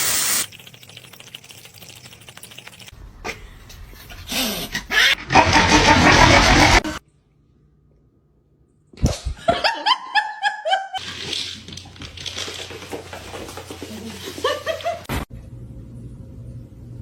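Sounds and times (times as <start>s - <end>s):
person laughing: 5.0s - 7.0s, 14.1s - 15.1s.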